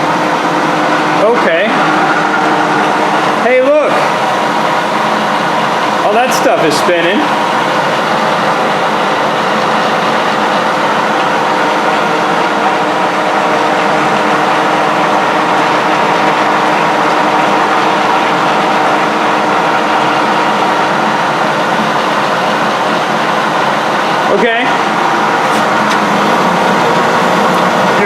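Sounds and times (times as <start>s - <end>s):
lathe motor whirring: 0.0s - 28.0s.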